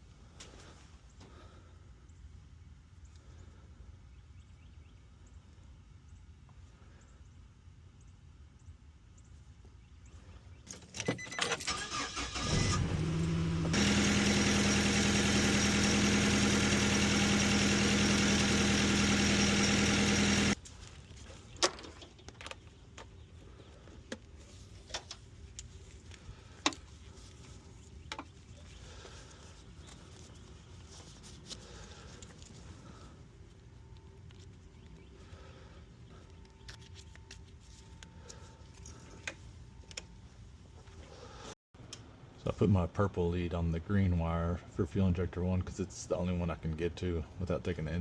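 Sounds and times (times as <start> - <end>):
car engine starting and running: 11.7 - 20.6.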